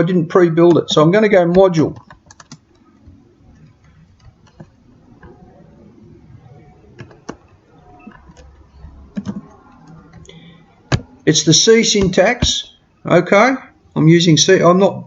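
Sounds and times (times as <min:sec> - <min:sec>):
keyboard typing: 0:01.4 - 0:05.8, 0:06.5 - 0:12.6.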